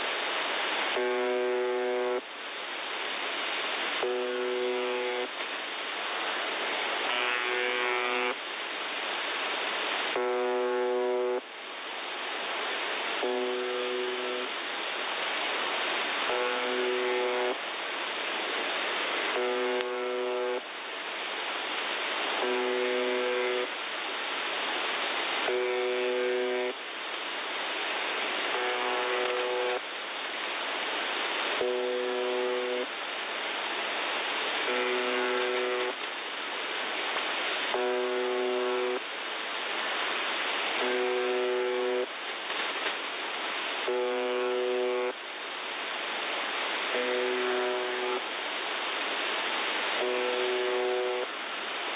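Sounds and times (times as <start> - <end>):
radio static: 0.8 - 2.3, 3.9 - 5.5, 7.0 - 8.4, 10.0 - 11.5, 13.0 - 14.7, 16.2 - 17.6, 19.0 - 20.7, 22.3 - 23.8, 25.2 - 26.8, 28.4 - 29.9, 31.5 - 33.0, 34.6 - 36.2, 37.7 - 39.1, 40.7 - 43.0, 43.8 - 45.2, 46.8 - 48.3, 49.9 - 51.3
buzz tone: 0.9 - 2.2, 4.0 - 5.3, 7.1 - 8.4, 10.2 - 11.4, 13.2 - 14.5, 16.3 - 17.6, 19.4 - 20.7, 22.4 - 23.7, 25.4 - 26.8, 28.5 - 29.8, 31.6 - 32.9, 34.7 - 36.0, 37.7 - 39.0, 40.8 - 42.1, 43.9 - 45.2, 46.9 - 48.2, 50.0 - 51.3.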